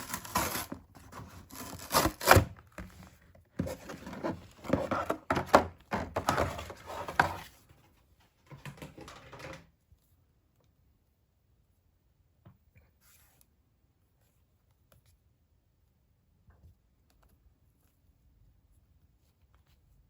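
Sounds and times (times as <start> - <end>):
rustling and tearing packaging: 0.0 - 7.5.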